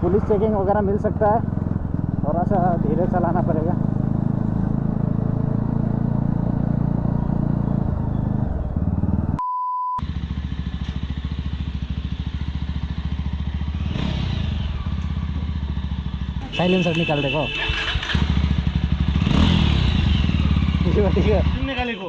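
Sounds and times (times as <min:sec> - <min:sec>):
unmuffled motorcycle engine: 0:00.0 - 0:09.4, 0:10.0 - 0:21.8
steady beep tone: 0:09.4 - 0:10.0.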